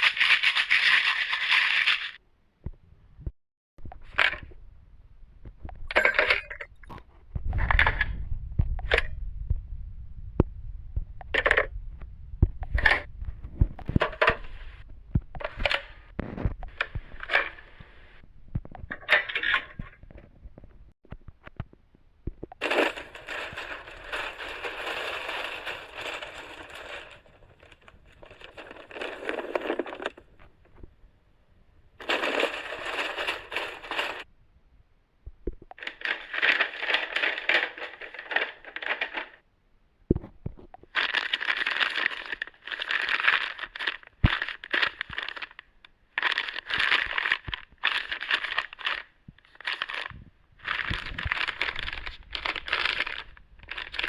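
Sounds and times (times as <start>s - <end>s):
crinkly material crumpling: 0.0s - 2.2s, 15.4s - 18.2s, 22.6s - 30.9s, 32.0s - 34.3s, 35.8s - 39.4s, 40.5s - 54.0s.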